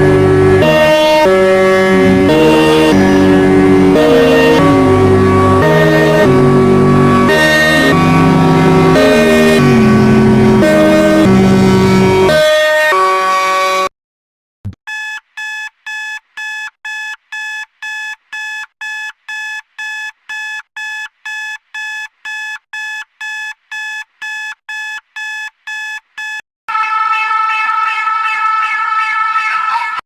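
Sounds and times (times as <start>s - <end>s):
buzzy electronic beeps: 0.0s - 13.8s
steady alarm tone: 0.0s - 13.9s, 26.7s - 30.0s.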